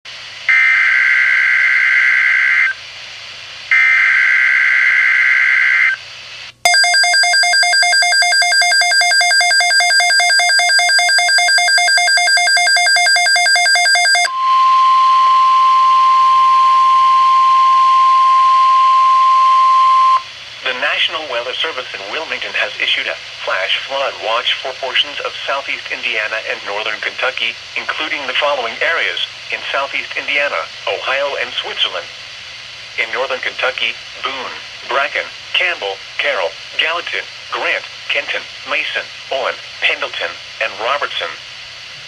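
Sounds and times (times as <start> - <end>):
steady warning tone: 6.7 - 20.3.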